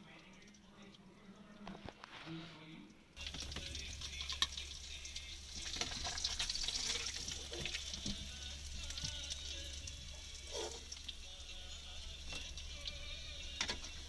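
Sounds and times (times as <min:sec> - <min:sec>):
low steady hum: 0:00.0 - 0:14.0
fish frying in hot oil: 0:03.2 - 0:14.0.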